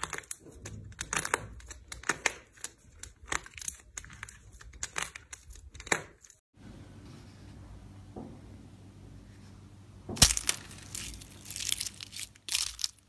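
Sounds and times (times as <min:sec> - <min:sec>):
slime crackling and popping: 0:10.2 - 0:13.0.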